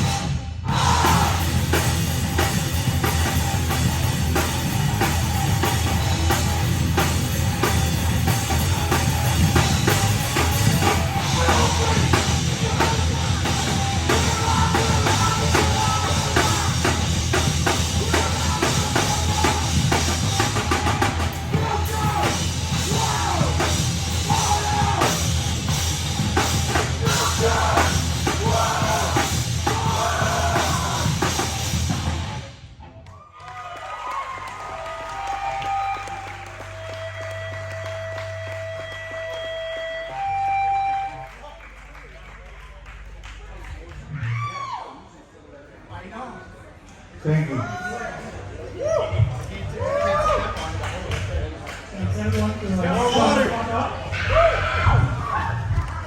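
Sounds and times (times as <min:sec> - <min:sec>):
pounding drum kit: 0:00.0 - 0:32.6
heavy rock band playing: 0:00.0 - 0:32.7
person singing: 0:10.8 - 0:17.1, 0:17.7 - 0:25.3, 0:26.8 - 0:31.3.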